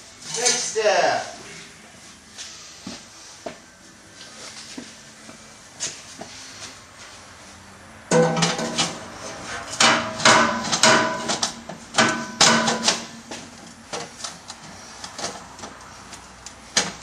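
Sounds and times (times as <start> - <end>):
sharp ringing knocks: 9.8 - 13.1.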